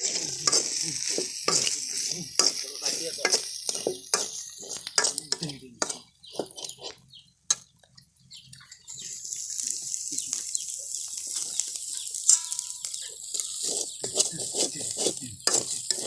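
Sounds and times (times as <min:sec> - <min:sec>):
fish frying in hot oil: 0:00.0 - 0:05.5, 0:08.6 - 0:16.0
utensil scraping a pan: 0:00.0 - 0:07.1, 0:11.3 - 0:16.0.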